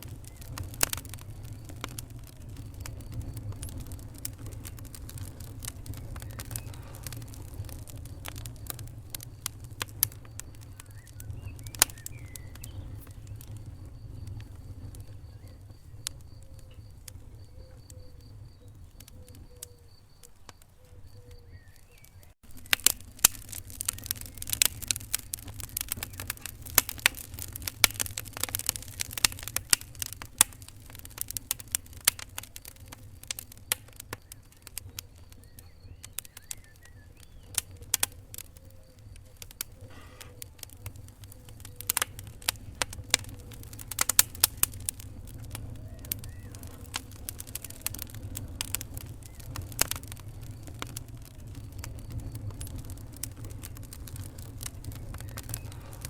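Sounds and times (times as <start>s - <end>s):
low steady rumble: 0.0s - 18.9s
wood fire crackling and popping: 0.0s - 56.0s.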